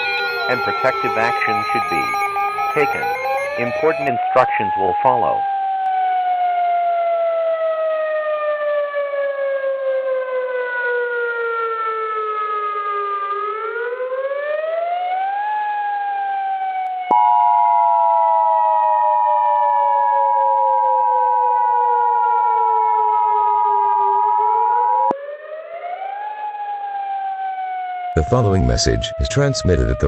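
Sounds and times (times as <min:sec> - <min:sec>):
two-tone attention signal: 0:00.0 - 0:05.4
civil defense siren wailing: 0:00.0 - 0:30.0.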